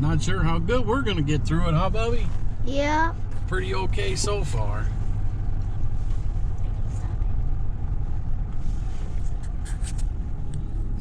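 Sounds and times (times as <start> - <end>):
vehicle driving on snow: 0.0 - 11.0.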